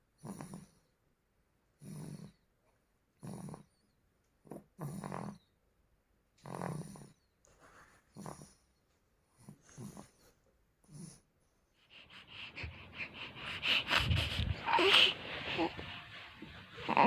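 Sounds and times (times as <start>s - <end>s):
baby snoring: 12.0s - 16.0s, 16.8s - 17.0s.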